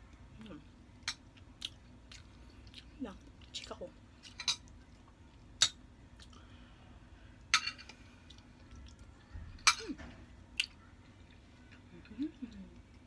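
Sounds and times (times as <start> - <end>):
utensils clinking against plate: 4.3 - 4.7, 7.5 - 8.0.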